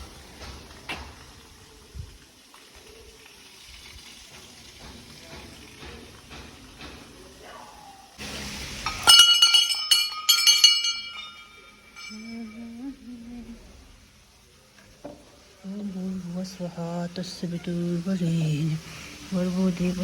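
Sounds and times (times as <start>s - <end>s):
metal bell ringing: 8.8s - 13.0s.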